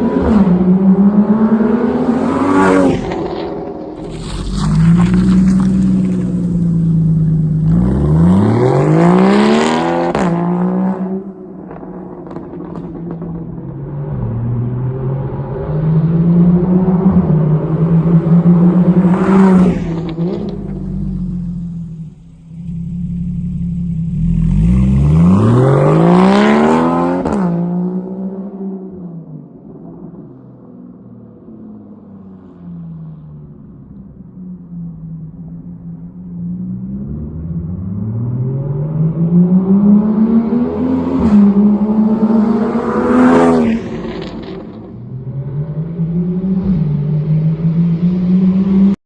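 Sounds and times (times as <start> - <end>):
car engine idling and revving: 0.0 - 49.0
exhaust crack: 3.0 - 9.2, 19.6 - 25.9
car exhaust revving: 4.0 - 10.9, 19.8 - 27.3.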